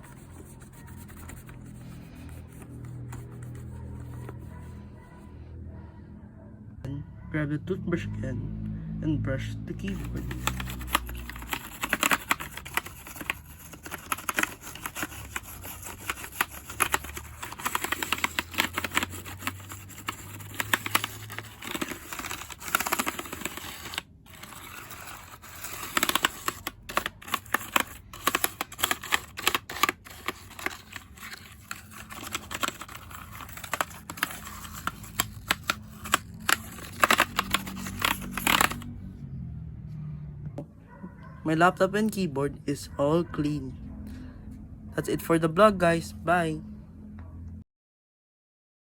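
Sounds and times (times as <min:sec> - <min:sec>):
toothbrush scrubbing keyboard: 0:00.0 - 0:05.1, 0:09.8 - 0:38.9
keyboard keys rattling and clicking: 0:09.9 - 0:38.9.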